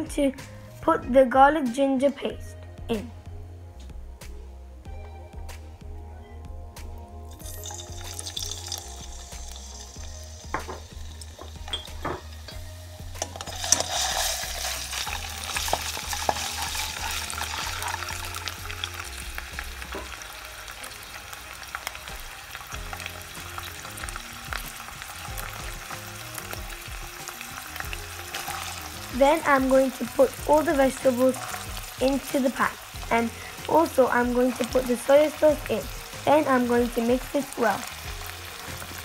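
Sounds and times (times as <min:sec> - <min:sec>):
stirring in a pan: 0:07.3 - 0:20.2, 0:25.0 - 0:33.6
paste sizzling in hot fat: 0:07.3 - 0:39.0
utensil knocks: 0:10.5 - 0:12.6.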